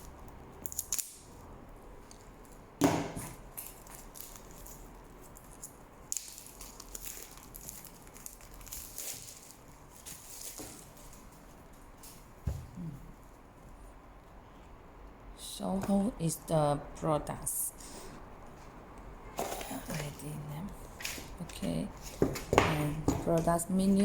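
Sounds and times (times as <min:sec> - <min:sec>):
packaging scratching and rustling: 0:03.3 - 0:12.1.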